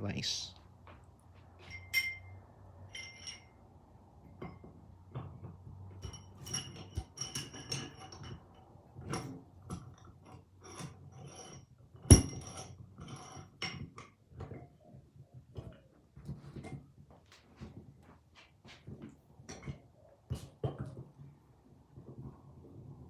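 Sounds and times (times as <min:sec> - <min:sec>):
metal vise clinking and knocking: 0:01.6 - 0:03.6, 0:04.2 - 0:08.5, 0:09.1 - 0:13.9.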